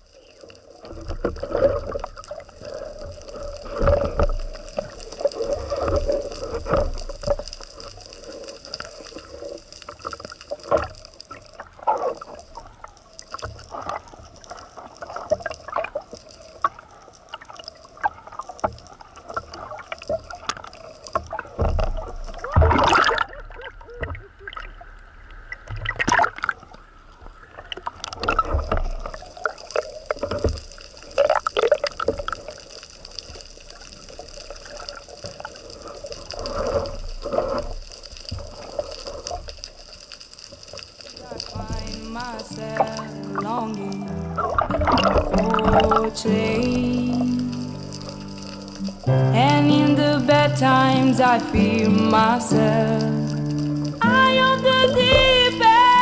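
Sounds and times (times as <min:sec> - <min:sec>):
water sloshing and gurgling: 0:00.0 - 0:33.4, 0:44.4 - 0:49.2.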